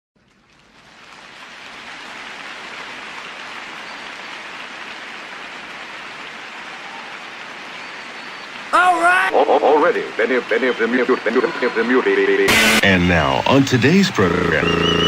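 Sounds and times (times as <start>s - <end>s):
steady hiss: 9.6s - 15.0s.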